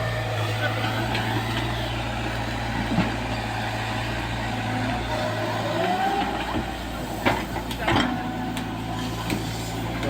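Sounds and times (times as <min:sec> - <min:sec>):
heavy vehicle engine running: 0:00.0 - 0:10.0.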